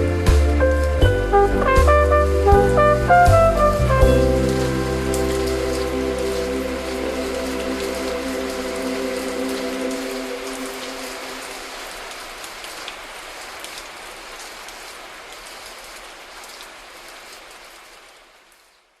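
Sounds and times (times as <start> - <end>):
distinct raindrops: 0.0 - 19.0
rain falling steadily: 0.0 - 19.0
music chord: 0.5 - 11.5.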